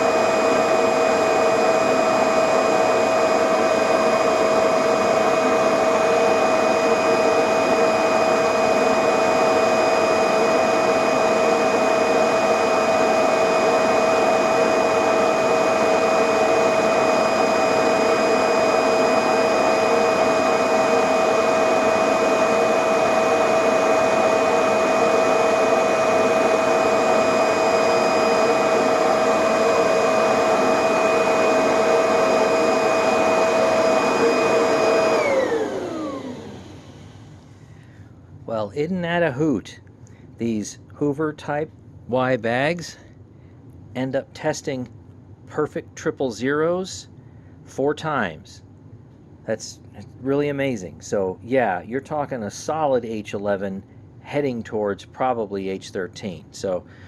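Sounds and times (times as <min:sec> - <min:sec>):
vacuum cleaner motor whining: 0:00.0 - 0:37.5.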